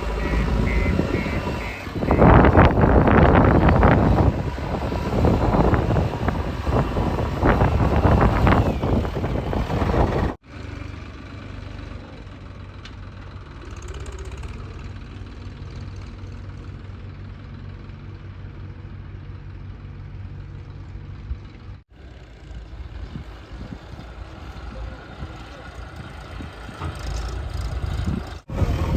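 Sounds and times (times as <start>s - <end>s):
wind noise on microphone: 0.0s - 10.4s, 23.0s - 28.9s
diesel engine running: 0.0s - 28.9s.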